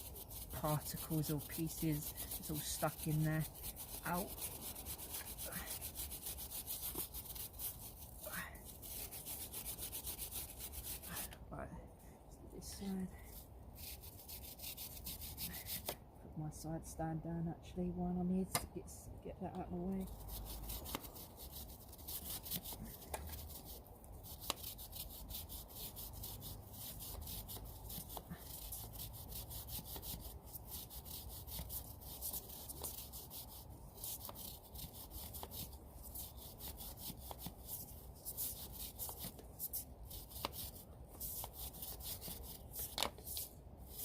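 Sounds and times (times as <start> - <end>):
stiff brush scrubbing chain: 0.0 - 11.4.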